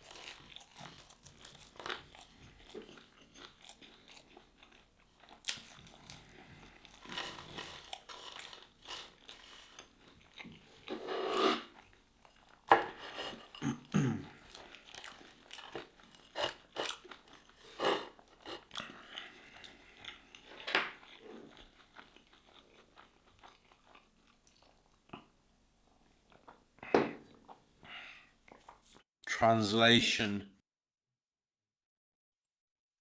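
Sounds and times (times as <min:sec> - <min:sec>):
crunchy bites and chewing: 0:00.0 - 0:10.9, 0:14.2 - 0:25.3.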